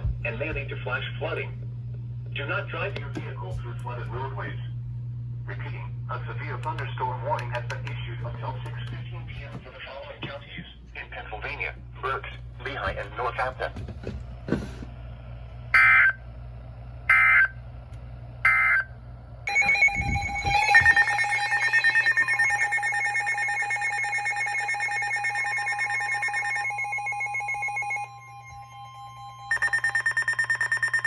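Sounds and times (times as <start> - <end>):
buzzy electronic alert tone: 19.5 - 31.0
digital data tone bursts: 19.5 - 31.0
rapid pulsing beeps: 19.5 - 31.0.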